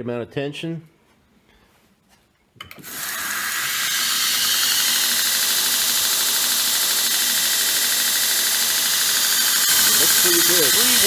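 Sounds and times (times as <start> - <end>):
belt grinder whirring: 2.7 - 11.0.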